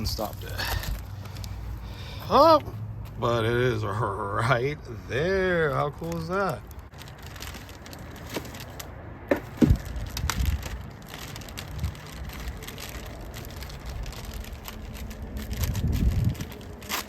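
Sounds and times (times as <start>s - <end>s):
scraping and rustling: 6.1s - 17.0s
sharp knocks: 9.3s - 9.8s.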